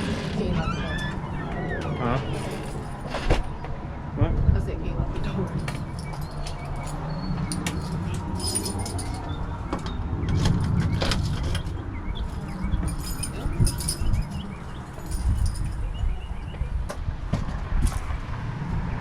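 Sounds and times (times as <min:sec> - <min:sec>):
keys jingling: 0:02.3 - 0:03.3, 0:05.5 - 0:09.5, 0:10.2 - 0:16.4.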